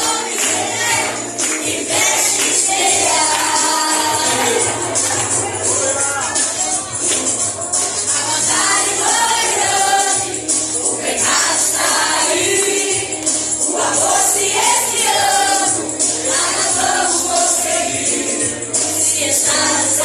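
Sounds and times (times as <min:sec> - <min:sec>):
choir singing a hymn: 0:00.0 - 0:07.0, 0:07.8 - 0:20.0
instrumental backing: 0:00.0 - 0:20.0.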